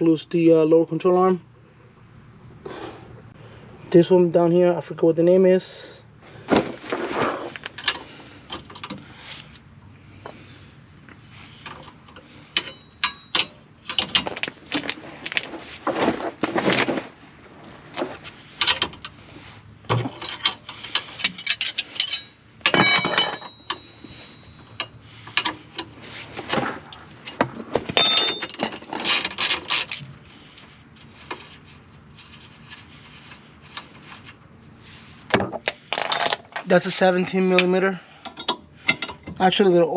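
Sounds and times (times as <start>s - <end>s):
metal tools clinking: 15.9s - 18.8s, 20.2s - 24.9s, 28.0s - 30.0s, 35.8s - 36.9s.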